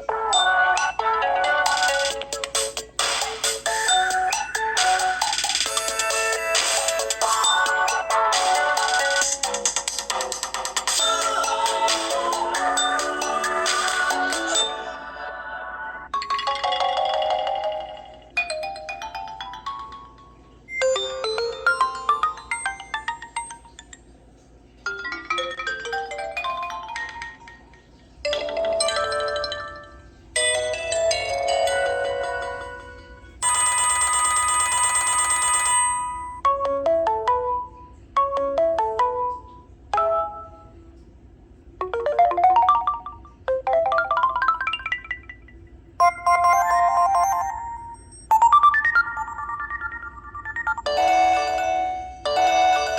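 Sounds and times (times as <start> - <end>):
electronic ringtone melodies: 0.0 - 15.3, 16.0 - 24.1, 24.9 - 40.8, 41.8 - 52.9
steady ringing tone: 25.0 - 36.4, 42.6 - 52.9.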